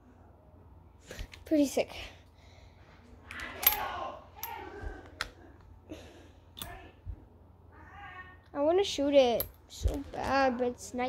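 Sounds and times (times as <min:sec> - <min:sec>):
metallic clicks and clinks: 0:03.3 - 0:04.6.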